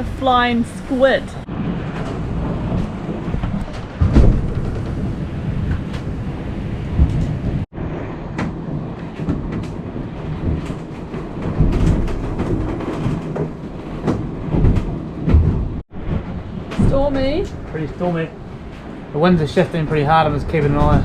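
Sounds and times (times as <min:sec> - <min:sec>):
wind and sea rumble: 0:00.0 - 0:21.0
knocks and clicks: 0:01.4 - 0:07.7, 0:08.3 - 0:17.8.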